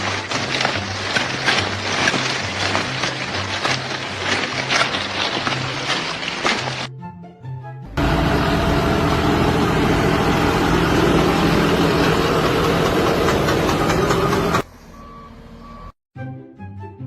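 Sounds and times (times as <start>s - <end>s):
loud engine running: 8.0s - 14.7s.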